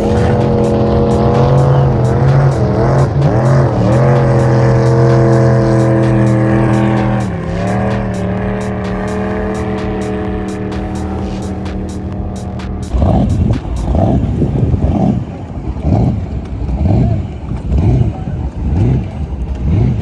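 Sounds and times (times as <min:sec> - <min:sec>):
music with regular beat: 0:00.0 - 0:14.6
jet boat engine droning: 0:00.0 - 0:18.5.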